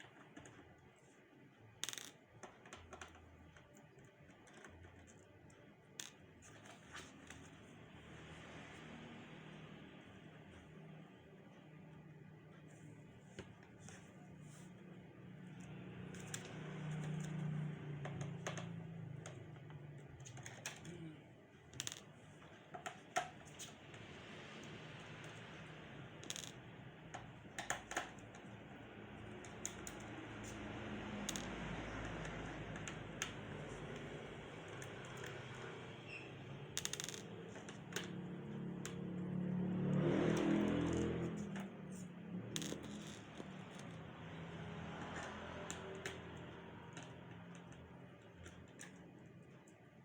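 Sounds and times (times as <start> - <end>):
laptop parts clicking and tapping: 1.8 - 7.5, 15.6 - 21.0, 21.7 - 24.1, 27.1 - 28.5.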